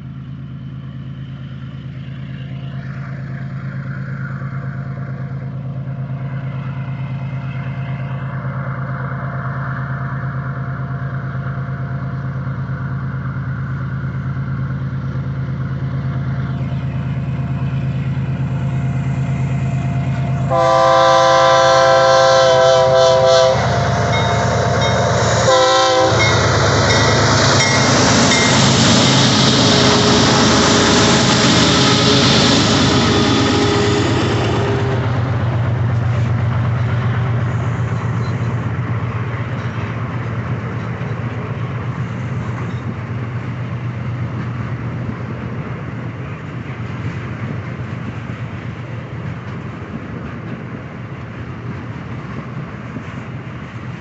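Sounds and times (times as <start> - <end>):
diesel locomotive engines running hard: 0.0 - 54.0
locomotive horn: 20.4 - 27.0, 29.7 - 35.1.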